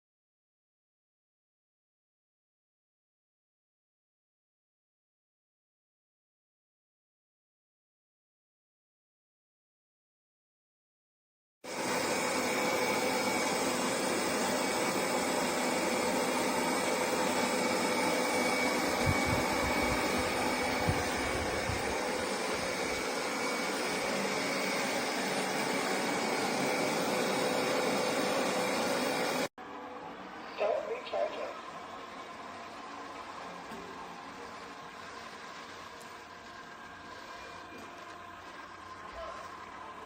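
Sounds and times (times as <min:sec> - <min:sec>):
robot vacuum suction noise: 0:11.7 - 0:29.5.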